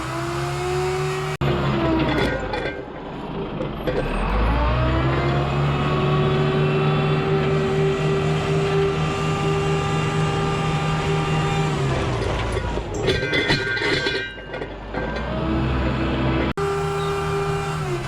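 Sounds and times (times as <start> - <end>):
diesel truck engine running: 15.2 - 18.0
high-pitched squeal with rattling: 16.6 - 18.0.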